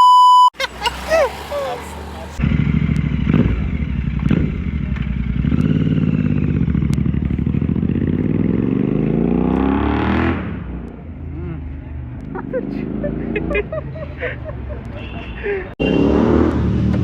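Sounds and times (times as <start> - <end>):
motorcycle engine revving: 0.7 - 14.0, 15.8 - 17.0
exhaust cracks: 2.2 - 11.1.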